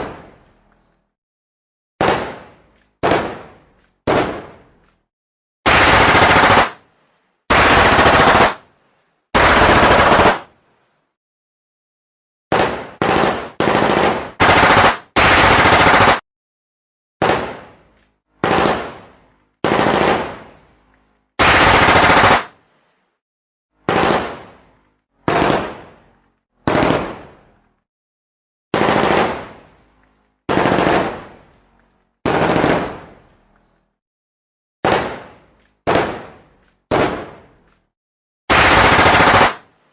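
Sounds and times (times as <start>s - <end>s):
gunshots: 2.0s - 4.7s, 5.7s - 6.8s, 7.5s - 8.6s, 12.5s - 16.2s, 17.2s - 17.8s, 18.4s - 20.5s, 21.4s - 22.6s, 23.8s - 24.6s, 25.2s - 26.0s, 26.6s - 27.4s, 28.8s - 29.6s, 30.5s - 31.4s, 32.2s - 33.2s, 34.8s - 37.5s, 38.5s - 39.7s.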